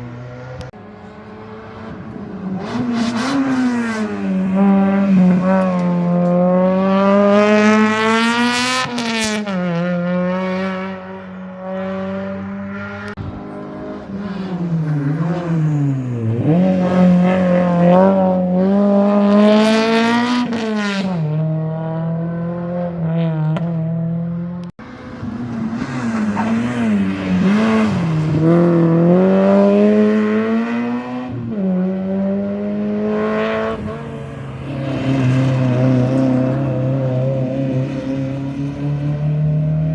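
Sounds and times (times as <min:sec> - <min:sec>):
rally car engines at full throttle: 0:00.0 - 0:39.9.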